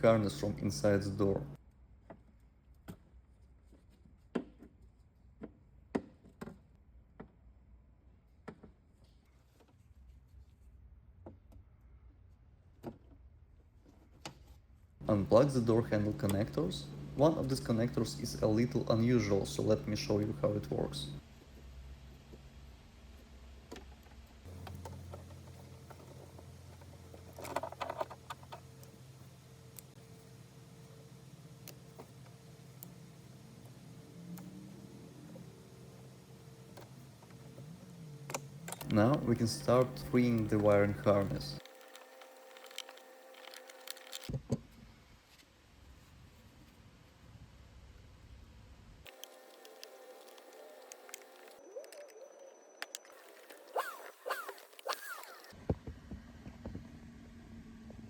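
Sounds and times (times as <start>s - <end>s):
steady low hum: 15.0s - 23.6s, 24.4s - 44.3s
plastic connectors clicking: 38.3s - 44.3s.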